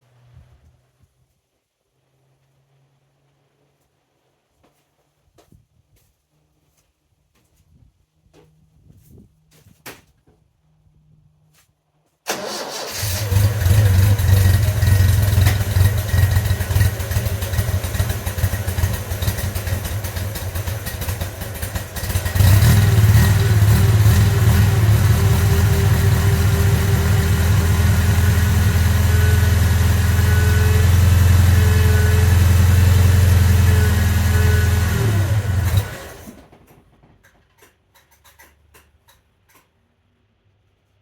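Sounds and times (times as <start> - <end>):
car engine starting and running: 12.3 - 36.8.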